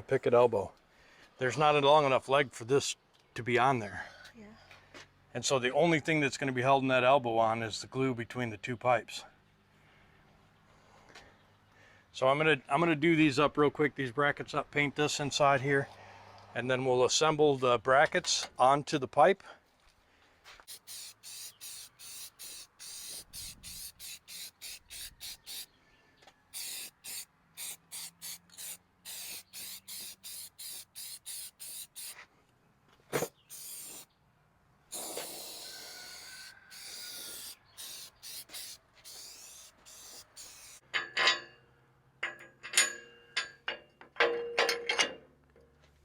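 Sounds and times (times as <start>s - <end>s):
spray paint can hissing: 20.7s - 25.7s, 26.6s - 32.2s, 33.2s - 34.1s, 34.9s - 40.8s.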